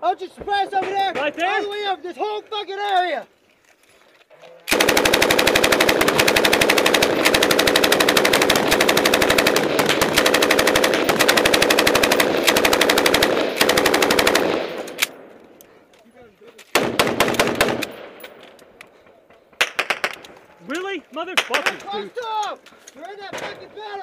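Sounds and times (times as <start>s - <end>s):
machine gun firing bursts: 4.7s - 15.1s, 16.7s - 18.1s.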